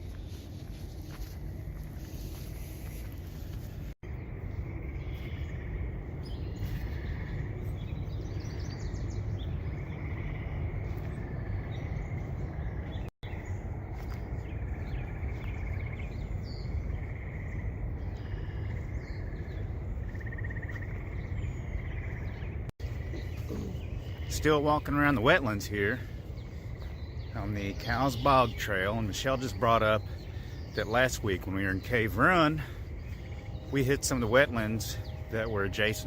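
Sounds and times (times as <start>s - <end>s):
low rumble: 0.0s - 24.9s.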